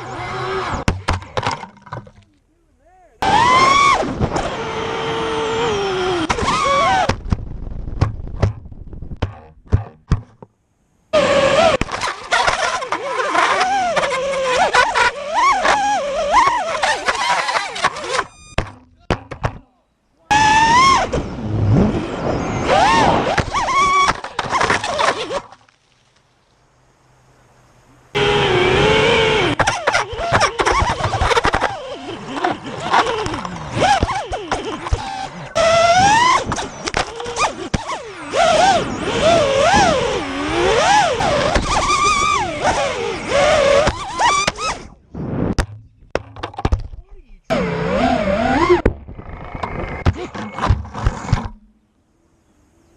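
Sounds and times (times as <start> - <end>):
drone motors whining: 0.0 - 2.2, 3.2 - 7.8, 11.1 - 18.9, 20.2 - 25.5, 27.8 - 45.6, 47.5 - 52.6
sharp knocks: 7.1 - 10.5, 18.5 - 19.7
faint hum: 26.4 - 30.4.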